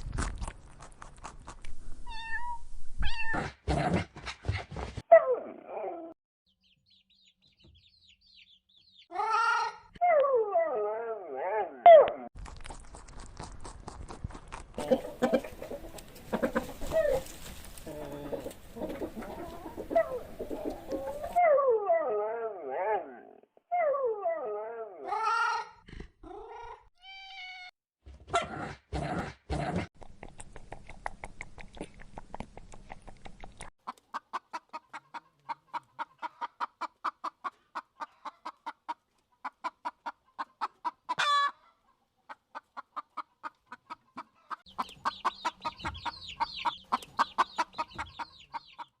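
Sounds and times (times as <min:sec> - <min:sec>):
hen clucking: 0:12.9 - 0:21.4, 0:33.8 - 0:49.0.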